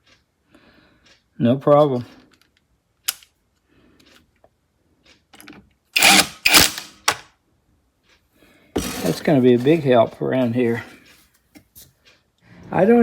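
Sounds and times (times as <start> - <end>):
impact wrench bursts: 6.0 - 7.2, 8.8 - 9.3.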